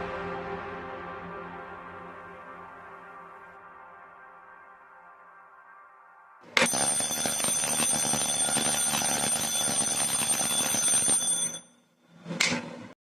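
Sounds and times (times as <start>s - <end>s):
shrill alarm buzzer: 6.5s - 11.7s.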